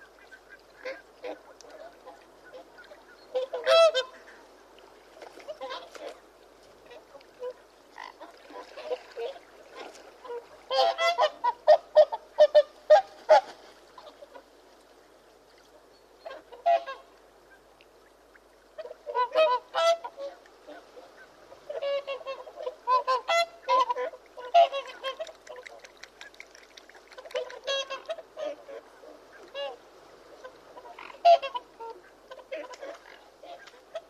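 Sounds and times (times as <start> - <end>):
geese honking: 0.0 - 4.4, 10.2 - 13.4, 18.8 - 25.7, 30.4 - 34.0.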